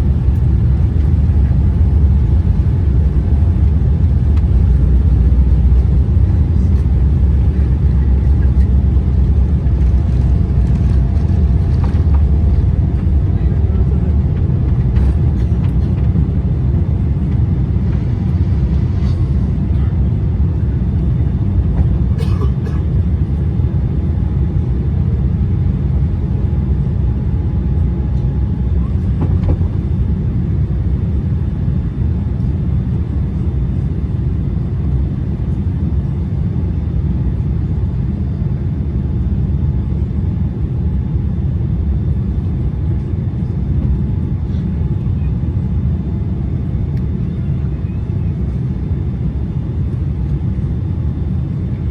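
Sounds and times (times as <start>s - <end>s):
aeroplane engines rumbling: 0.0s - 51.9s.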